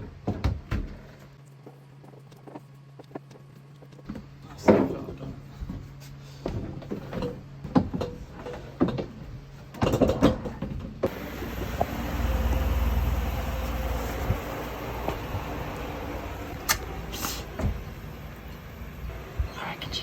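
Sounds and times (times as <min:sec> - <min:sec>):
objects knocking and clunking: 0:00.0 - 0:01.4, 0:03.8 - 0:12.0.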